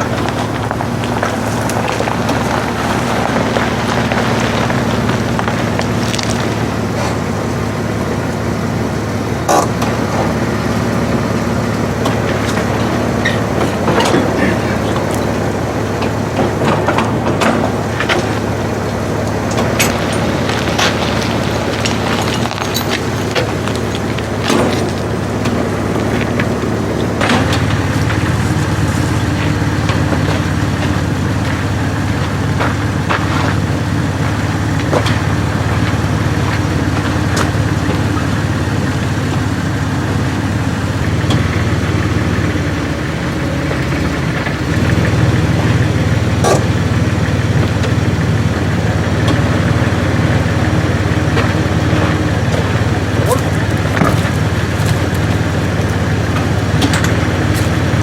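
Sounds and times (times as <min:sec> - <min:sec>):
engine running at low speed: 0:00.0 - 0:58.0.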